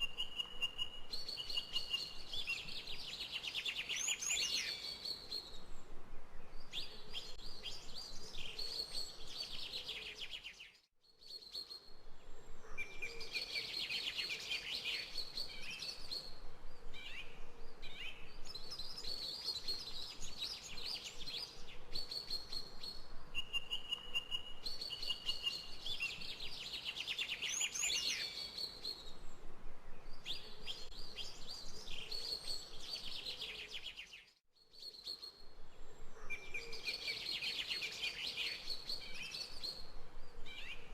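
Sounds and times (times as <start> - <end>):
songbirds chirping and singing: 0.1 - 5.7, 12.5 - 29.2, 36.0 - 40.9.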